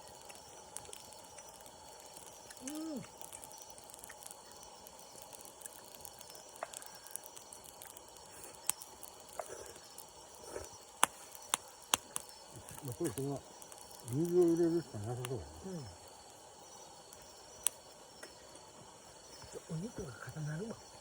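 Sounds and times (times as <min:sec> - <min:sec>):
campfire crackling and popping: 0:00.0 - 0:21.0
pot simmering hiss: 0:00.0 - 0:21.0
person humming: 0:02.6 - 0:03.1.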